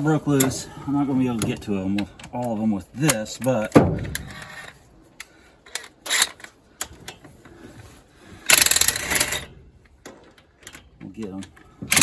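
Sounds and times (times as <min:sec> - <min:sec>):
knocks: 0:03.7 - 0:04.4.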